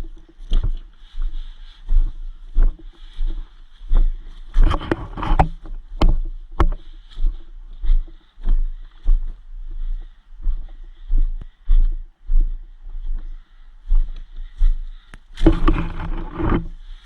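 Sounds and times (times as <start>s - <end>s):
footsteps in undergrowth: 0.0s - 17.0s
brush rustling: 0.3s - 8.2s, 14.5s - 17.0s.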